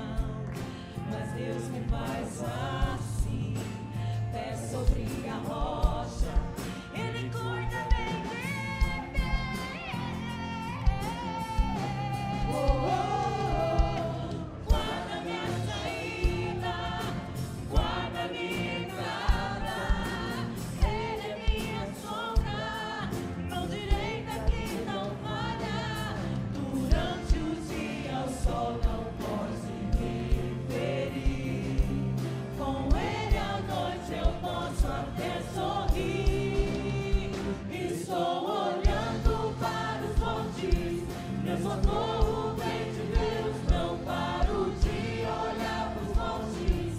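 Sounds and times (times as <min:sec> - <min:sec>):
gospel choir singing: 0:00.0 - 0:46.9
live band playing: 0:00.0 - 0:46.9
drum hits on a steady beat: 0:10.9 - 0:22.9, 0:23.8 - 0:46.9.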